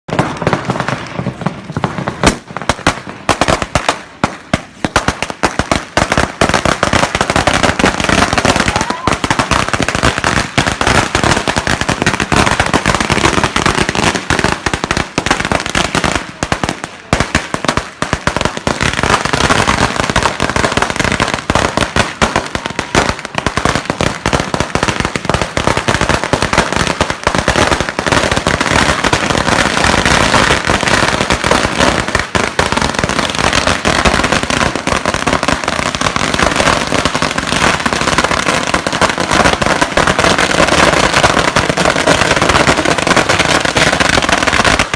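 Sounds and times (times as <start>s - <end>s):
firecrackers crackling: 0.0s - 44.9s.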